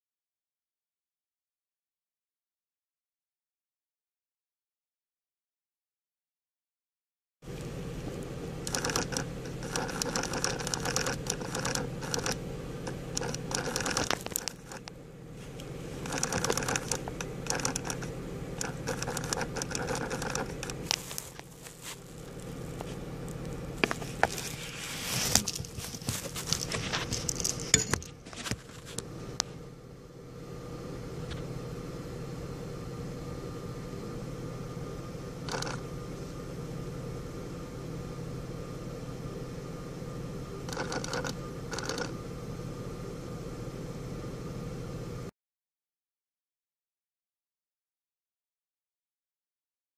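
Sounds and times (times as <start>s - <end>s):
steady low hum: 7.4s - 45.3s
actuator motor chattering: 7.5s - 29.7s, 35.2s - 36.6s, 40.5s - 43.1s.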